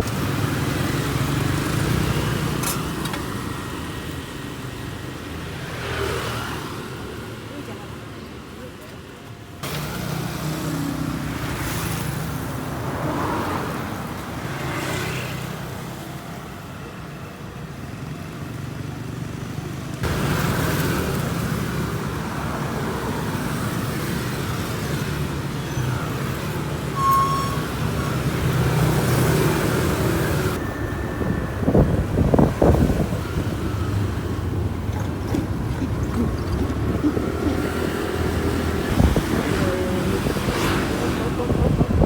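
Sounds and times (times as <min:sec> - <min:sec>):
vehicle engine rumble: 0:15.4 - 0:42.0
brief high beep: 0:27.0 - 0:28.0.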